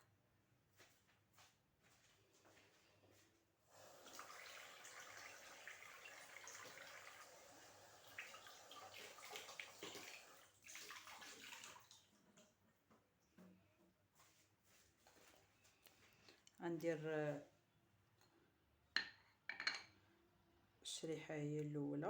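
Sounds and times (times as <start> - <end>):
tap water running: 3.6 - 13.0.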